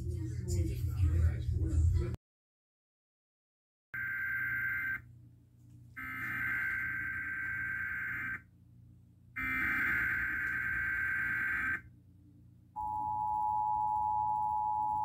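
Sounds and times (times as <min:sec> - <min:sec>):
harsh buzzing data burst: 0:04.0 - 0:05.0, 0:06.0 - 0:08.4, 0:09.4 - 0:11.9.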